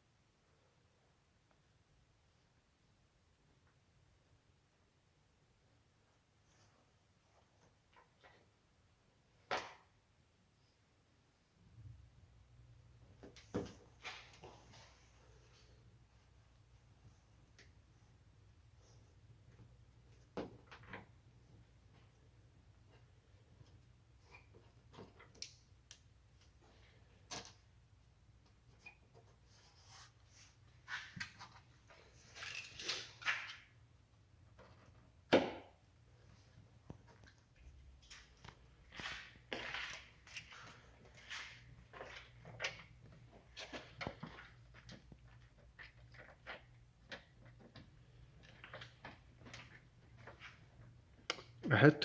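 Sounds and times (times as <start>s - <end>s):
faint clicks of handling parts: 13.0s - 33.8s, 36.2s - 51.7s.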